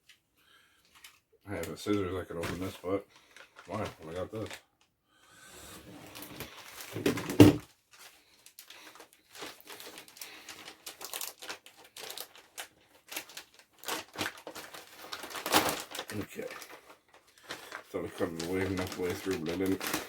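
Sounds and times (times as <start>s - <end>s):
packaging tearing and crinkling: 1.0s - 4.6s, 6.1s - 20.0s.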